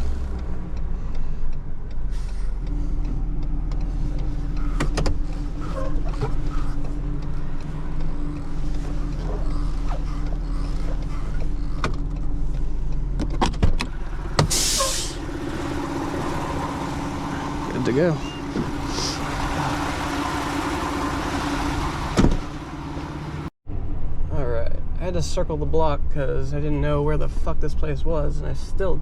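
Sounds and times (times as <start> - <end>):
tow truck engine drone: 0.0 - 24.0
sharp clicks and knocks: 0.3 - 14.5.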